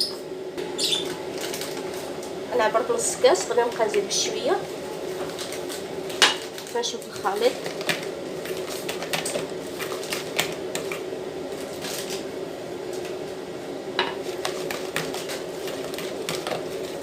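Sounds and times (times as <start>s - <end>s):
steady low hum: 0.0s - 17.0s
utensil stirring batter in bowl: 14.2s - 17.0s.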